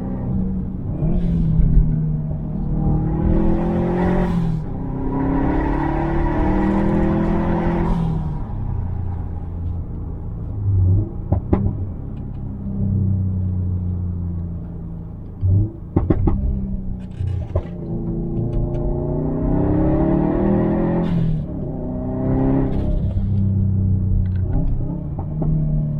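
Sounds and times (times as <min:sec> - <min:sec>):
engine revving: 0:00.0 - 0:08.6, 0:17.1 - 0:23.5
exhaust pops and bangs: 0:15.9 - 0:17.9.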